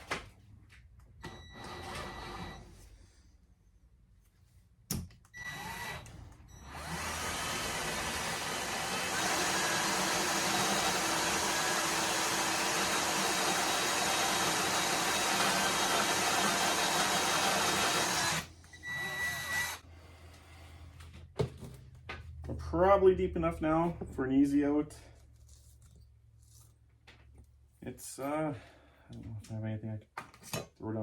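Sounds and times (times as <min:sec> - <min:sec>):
electric drill boring: 0:05.4 - 0:19.8.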